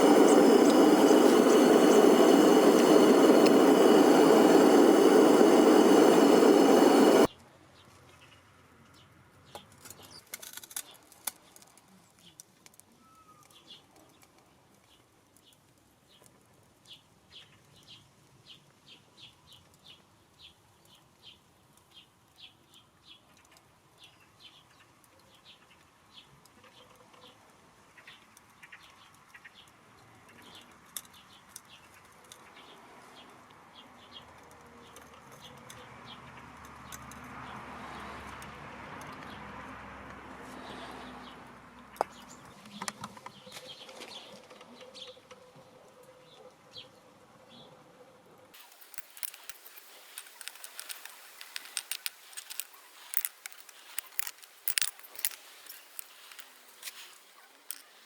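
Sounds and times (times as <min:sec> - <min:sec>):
broad rushing noise: 0:00.0 - 0:07.3
small bird chirping: 0:00.0 - 0:07.3, 0:48.6 - 0:58.0
sharp clicks: 0:48.6 - 0:58.0.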